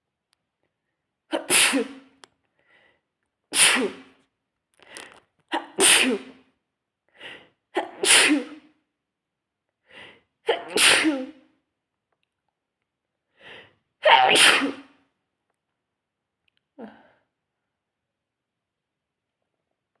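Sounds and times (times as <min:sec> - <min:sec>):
person sneezing: 0:01.3 - 0:02.1, 0:03.5 - 0:04.2, 0:05.5 - 0:06.4, 0:07.8 - 0:08.7, 0:10.5 - 0:11.4, 0:14.0 - 0:15.0.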